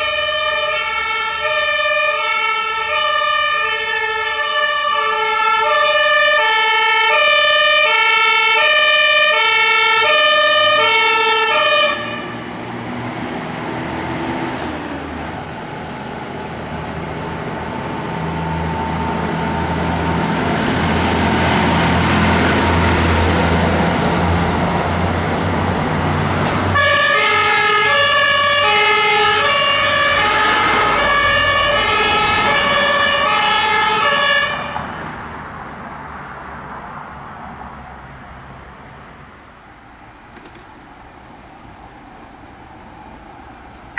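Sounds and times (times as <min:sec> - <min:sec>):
two-tone emergency sirens: 0:00.0 - 0:24.6, 0:25.9 - 0:35.3
heavy vehicle passing: 0:09.9 - 0:39.4.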